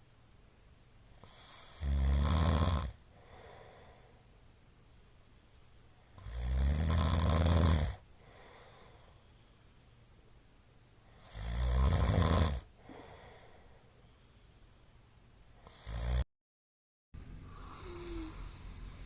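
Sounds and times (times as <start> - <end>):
man snoring loudly: 1.2 - 3.0, 6.2 - 8.0, 11.2 - 12.7, 15.7 - 16.2
quiet breathing: 2.9 - 6.3, 8.0 - 10.4, 12.6 - 15.9, 17.2 - 19.0.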